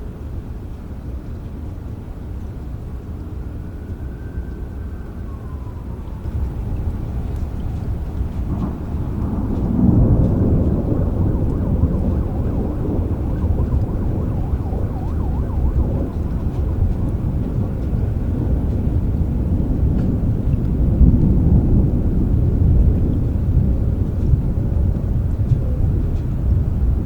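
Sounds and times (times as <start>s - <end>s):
rain: 0.0s - 27.0s
thunder rumbling: 5.4s - 27.0s.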